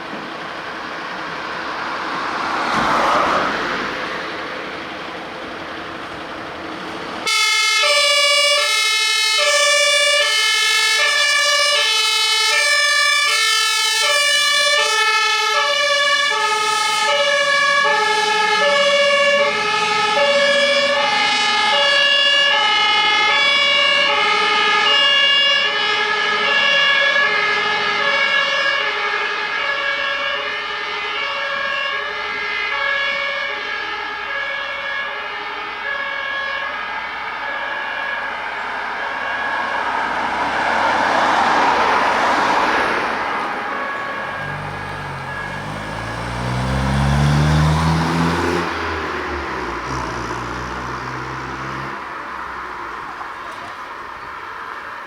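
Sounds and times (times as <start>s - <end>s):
vehicle rushing past: 1.3s - 4.8s, 39.7s - 53.2s
fire engine two-tone siren: 7.1s - 55.0s.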